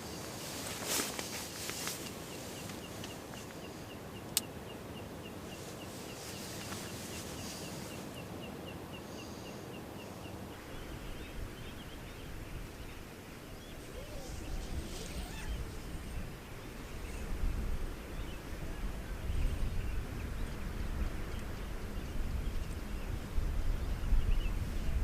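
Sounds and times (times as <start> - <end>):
small animal chirping: 13.8 - 16.1.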